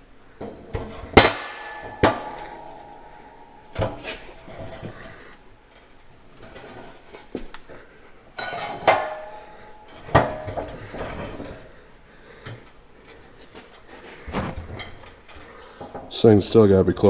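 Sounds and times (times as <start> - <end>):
metal parts clanking: 8.4 - 11.7.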